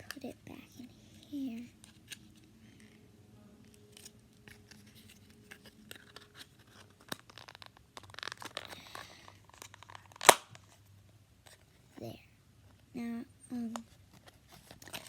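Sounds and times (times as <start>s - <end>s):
sticky slime clicks and crackles: 5.9s - 10.6s.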